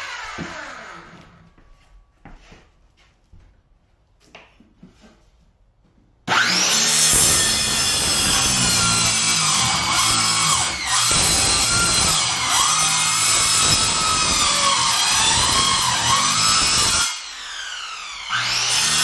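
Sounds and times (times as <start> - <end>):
saw cutting into wood: 0.0 - 1.4, 6.3 - 19.0
power saw whining: 0.0 - 1.5, 6.3 - 19.0
light knocks and scrapes: 4.2 - 5.5.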